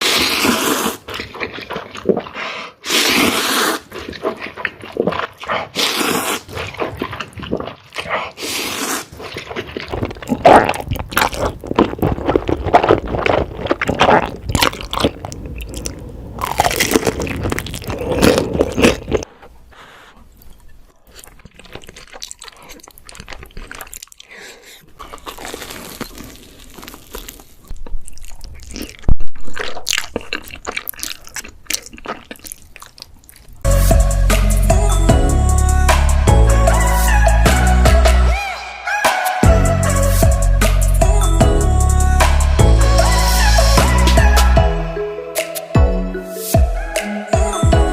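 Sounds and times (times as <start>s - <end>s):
crunchy bites and chewing: 0.0s - 19.3s, 21.0s - 33.8s.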